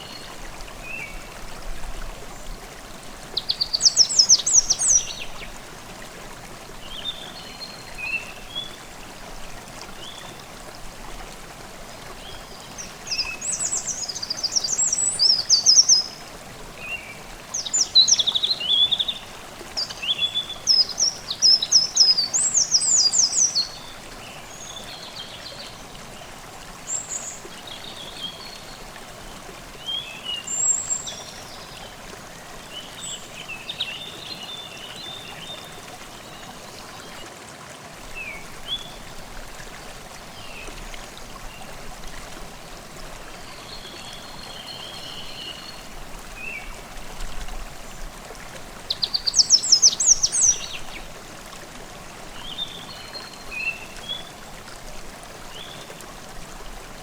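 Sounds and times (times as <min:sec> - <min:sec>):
stream babbling: 0:00.0 - 0:57.0
songbirds trilling: 0:48.8 - 0:51.1.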